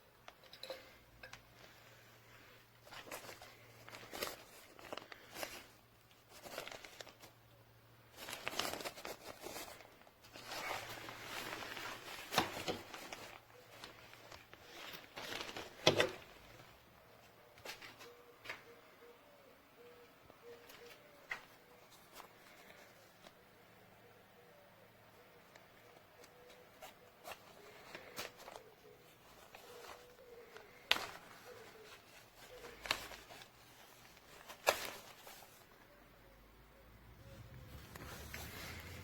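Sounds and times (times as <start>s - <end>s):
plastic sheeting crinkling: 2.7s - 7.5s, 8.1s - 18.2s, 25.8s - 35.8s, 37.2s - 39.0s.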